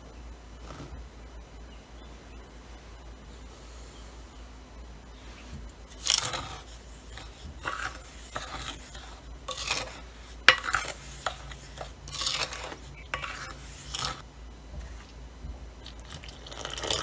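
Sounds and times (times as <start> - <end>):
utensil stirring batter in bowl: 5.2 - 17.0.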